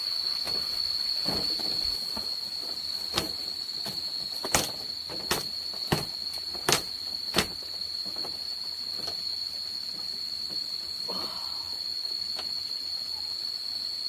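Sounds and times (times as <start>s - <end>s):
sharp knocks: 3.1s - 8.3s.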